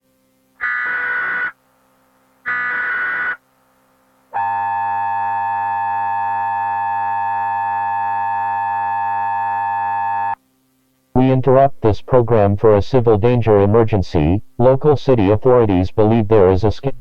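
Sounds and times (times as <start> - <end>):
buzzing digital header bursts: 0.6 - 1.6, 2.4 - 3.4
two-tone attention signal: 0.6 - 1.6, 2.5 - 3.4, 4.4 - 10.4.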